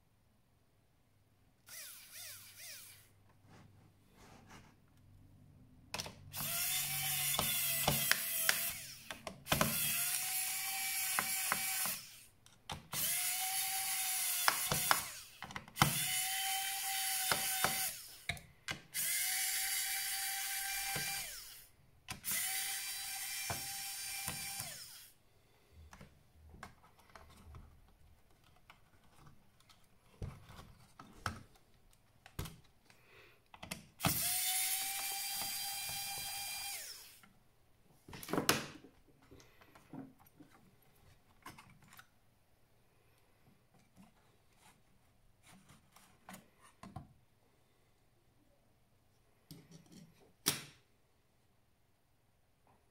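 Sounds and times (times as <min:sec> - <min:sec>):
electric screwdriver whining: 0:01.7 - 0:03.1, 0:06.3 - 0:12.3, 0:12.9 - 0:18.3, 0:19.0 - 0:25.2, 0:34.0 - 0:37.3
clicks and taps of parts: 0:14.3 - 0:16.0, 0:17.2 - 0:19.0, 0:25.9 - 0:34.2.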